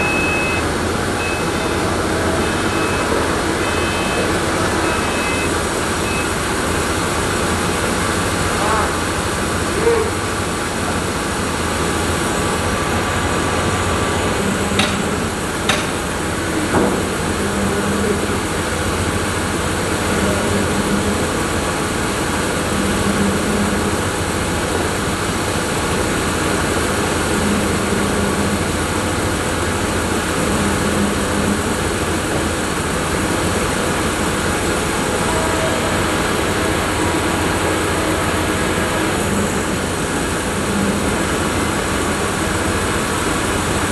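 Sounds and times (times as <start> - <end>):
sawmill machinery running: 0.0 - 43.9
sharp knocks: 14.8 - 15.1, 15.7 - 16.0.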